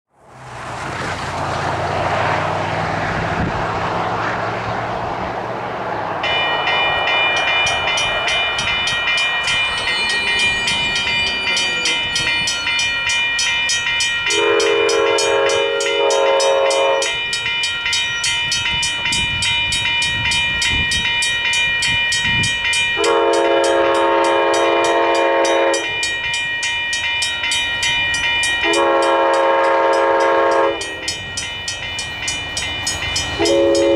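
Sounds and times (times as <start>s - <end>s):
low rumble and rushing: 0.5s - 6.2s
electronic crossing bell ringing: 6.2s - 33.9s
locomotive horn blasts: 14.3s - 17.3s, 23.0s - 26.0s, 28.6s - 31.2s, 33.4s - 33.9s.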